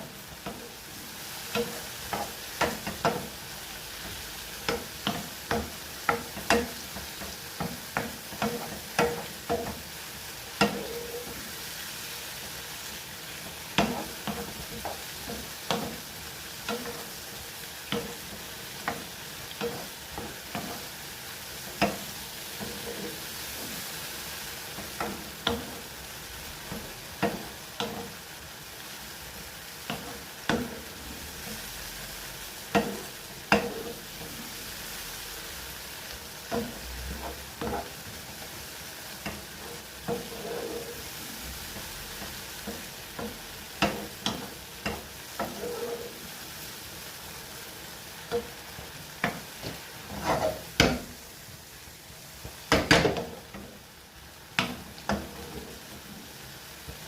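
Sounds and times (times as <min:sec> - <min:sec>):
mushrooms sizzling in pan: 0:00.0 - 0:57.0
utensil scraping pan: 0:10.6 - 0:11.5, 0:21.6 - 0:23.8, 0:32.7 - 0:34.6, 0:36.5 - 0:38.4, 0:39.2 - 0:46.4, 0:49.2 - 0:51.1.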